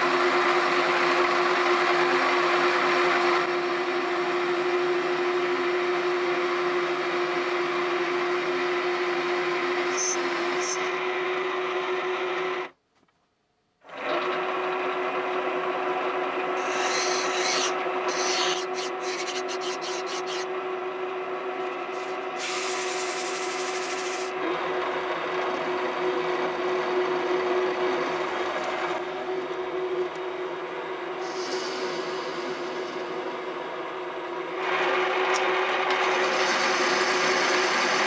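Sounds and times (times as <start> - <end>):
lathe humming: 16.4 - 26.0, 27.3 - 38.0
file rasping on steel: 16.6 - 20.5, 21.9 - 24.3.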